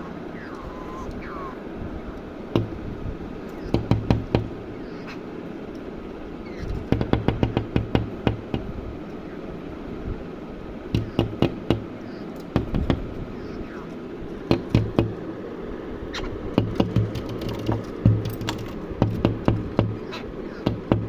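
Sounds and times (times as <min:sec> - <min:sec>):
steady background hiss: 0:00.0 - 0:21.0
sharp knocks in bursts: 0:02.5 - 0:02.8, 0:03.6 - 0:04.6, 0:06.7 - 0:08.7, 0:10.9 - 0:13.1, 0:14.4 - 0:15.2, 0:16.5 - 0:21.0.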